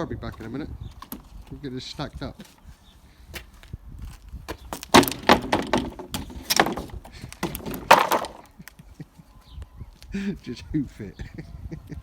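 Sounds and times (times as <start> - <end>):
wooden panels knocking and clattering: 4.7 - 8.5.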